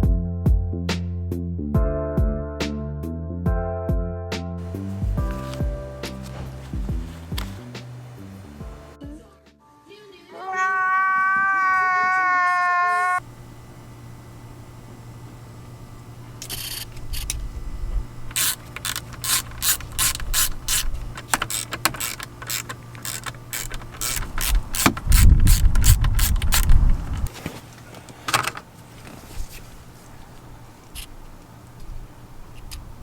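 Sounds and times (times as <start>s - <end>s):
low rumble of handling: 4.6s - 9.0s, 13.2s - 33.0s
ratchet clicking: 18.3s - 27.3s.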